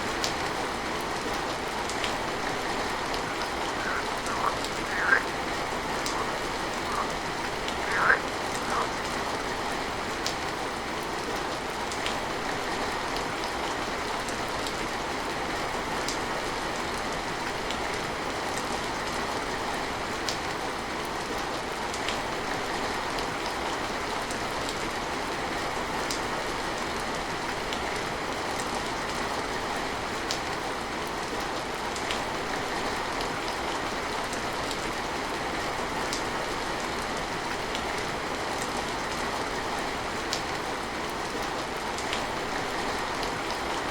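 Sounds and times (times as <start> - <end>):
steady rain falling: 0.0 - 43.9.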